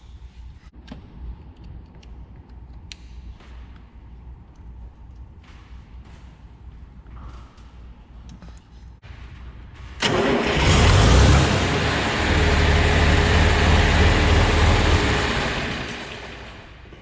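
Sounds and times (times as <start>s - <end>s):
tractor engine starting and running: 9.8s - 17.0s.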